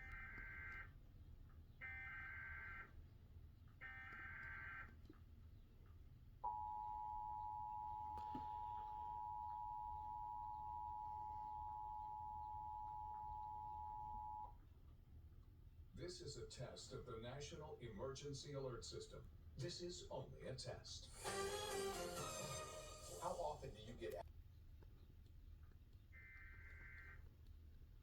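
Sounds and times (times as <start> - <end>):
two-tone attention signal: 6.5 - 14.5.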